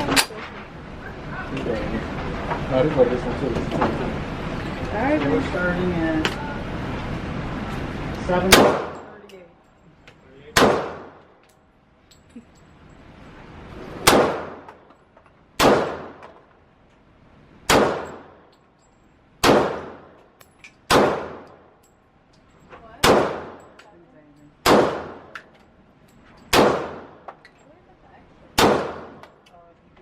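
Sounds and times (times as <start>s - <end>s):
pistol shots echoing: 8.5s - 9.1s, 10.6s - 11.3s, 14.0s - 14.7s, 15.6s - 16.3s, 17.7s - 18.4s, 19.4s - 20.2s, 20.9s - 21.6s, 23.0s - 23.7s, 24.6s - 25.4s, 26.5s - 27.3s, 28.6s - 29.3s.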